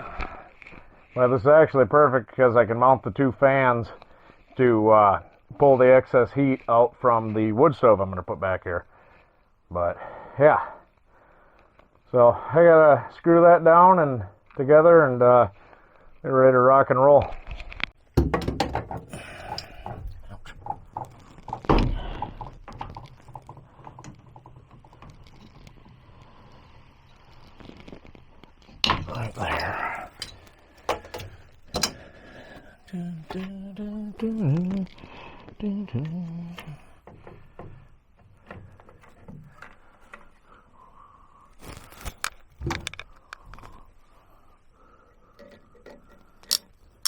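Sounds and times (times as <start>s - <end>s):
knocks and clatter of building work: 17.4s - 26.8s, 27.7s - 33.5s, 36.6s - 40.6s, 45.4s - 46.8s.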